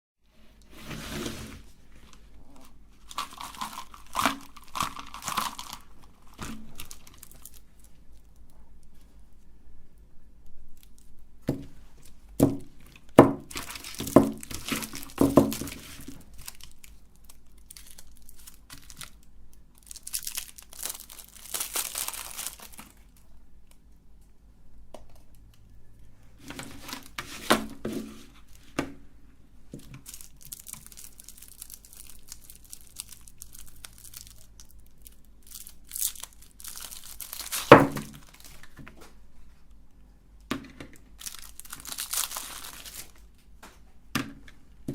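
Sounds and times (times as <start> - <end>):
plastic wrapper crinkling and tearing: 2.0 - 9.0, 10.4 - 11.2, 12.0 - 23.8, 26.5 - 27.8, 29.8 - 38.9, 41.0 - 43.4.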